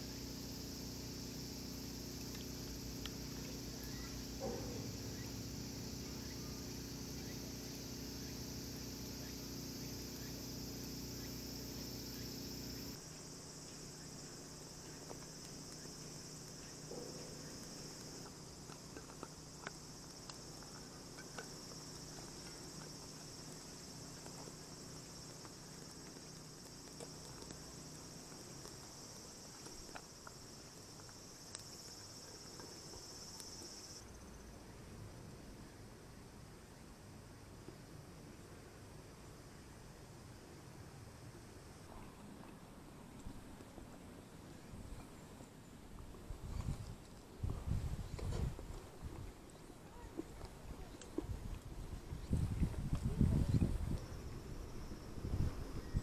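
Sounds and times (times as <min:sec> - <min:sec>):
low hum: 0:00.0 - 0:18.9
insects chirping: 0:00.0 - 0:36.9, 0:41.6 - 0:56.0.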